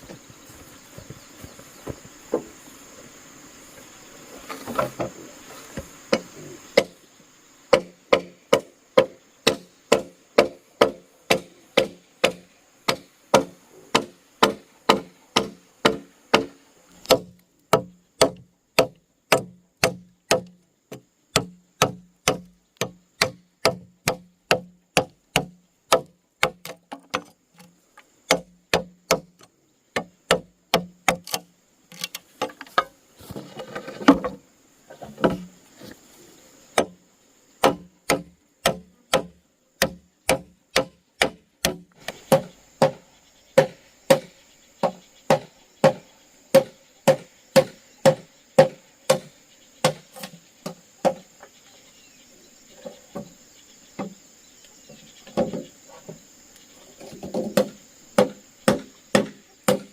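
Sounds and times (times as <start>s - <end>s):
tool striking wood: 7.7s - 27.7s, 28.3s - 34.4s, 36.8s - 37.0s, 37.6s - 43.0s, 43.6s - 51.2s, 57.2s - 59.9s.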